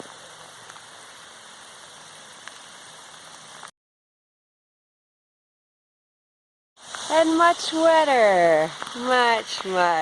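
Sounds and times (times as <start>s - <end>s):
steady rain falling: 0.0s - 3.7s, 6.8s - 10.0s.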